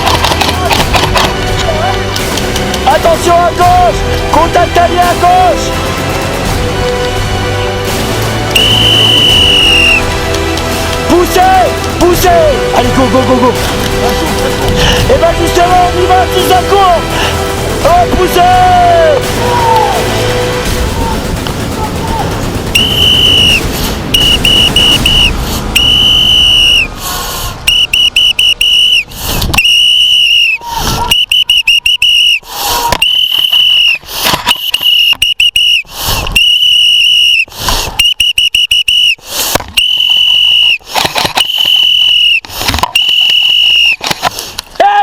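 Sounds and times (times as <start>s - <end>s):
whistle blasts and toots: 8.5s - 10.2s, 22.7s - 44.1s.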